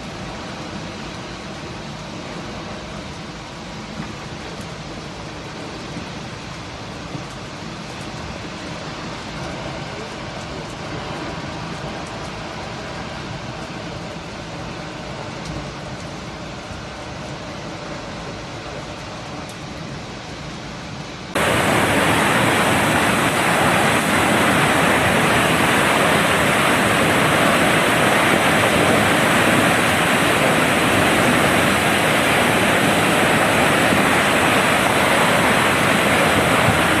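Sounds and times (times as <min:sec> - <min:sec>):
waterfall rushing: 0:21.4 - 0:37.0.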